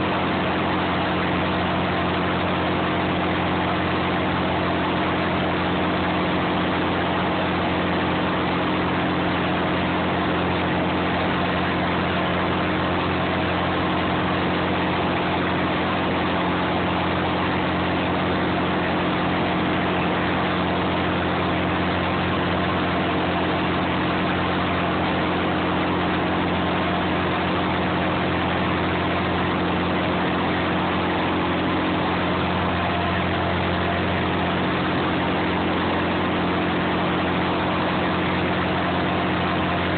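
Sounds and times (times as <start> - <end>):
boat engine droning: 0.0 - 39.9.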